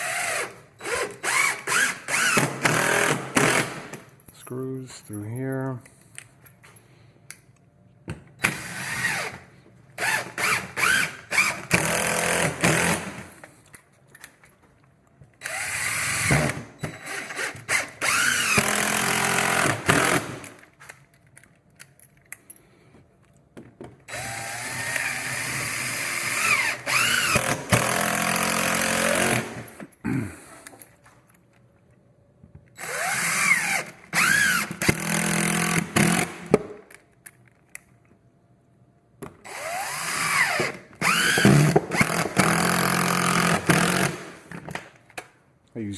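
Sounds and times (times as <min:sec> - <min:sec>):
power drill driving screws: 0:00.0 - 0:03.8, 0:08.4 - 0:09.4, 0:10.0 - 0:13.2, 0:15.4 - 0:20.4, 0:24.1 - 0:29.8, 0:32.8 - 0:36.5, 0:39.4 - 0:44.2.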